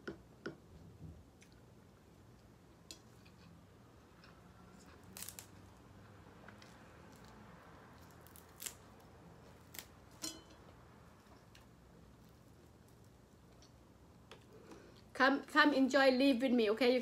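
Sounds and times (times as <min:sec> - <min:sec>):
faint steady background: 0:00.0 - 0:17.0.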